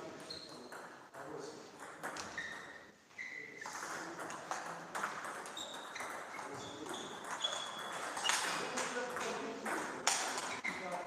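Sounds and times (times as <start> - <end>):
short high-pitched squeaks: 0.2 - 0.7, 2.3 - 3.7, 5.6 - 8.5.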